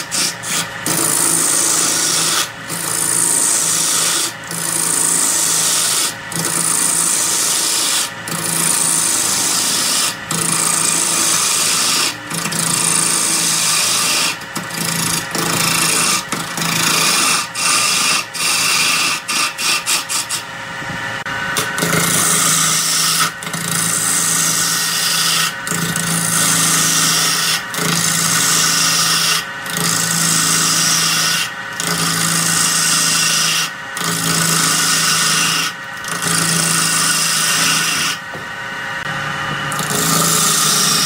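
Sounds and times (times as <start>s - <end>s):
wood lathe tool rasping: 0.0s - 20.6s, 21.2s - 41.0s.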